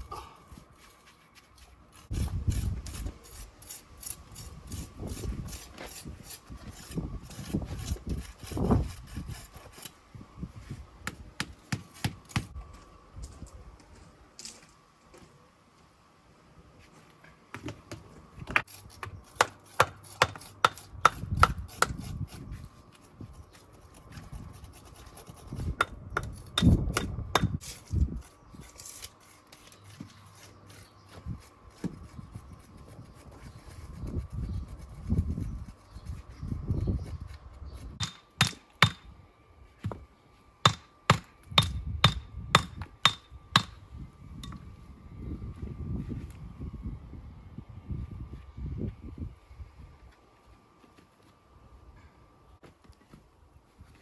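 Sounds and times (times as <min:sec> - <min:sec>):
hand tools scraping stone: 0:00.7 - 0:10.0, 0:18.6 - 0:37.1.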